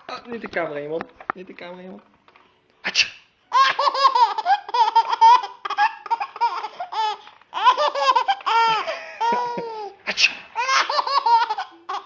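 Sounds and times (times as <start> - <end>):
baby laughing: 3.5 - 12.0.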